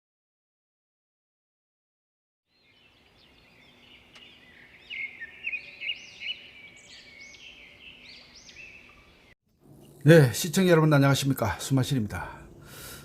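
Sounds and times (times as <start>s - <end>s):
faint outdoor background: 2.4s - 13.0s
songbirds singing: 2.5s - 10.0s.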